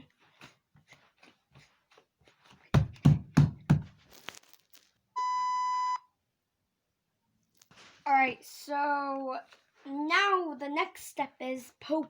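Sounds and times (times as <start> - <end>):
electronic beep: 5.2 - 6.0.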